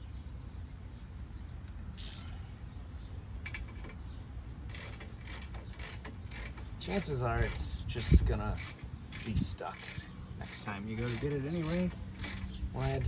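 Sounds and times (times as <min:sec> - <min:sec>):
ratchet wrench clicking: 0:02.0 - 0:02.3, 0:04.7 - 0:13.0.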